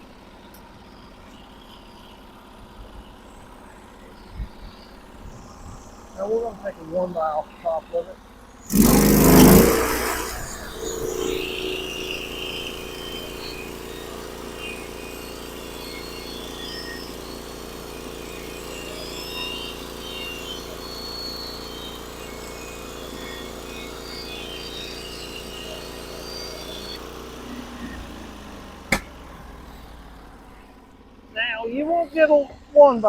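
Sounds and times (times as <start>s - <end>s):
sawmill cutting log: 8.7s - 30.6s.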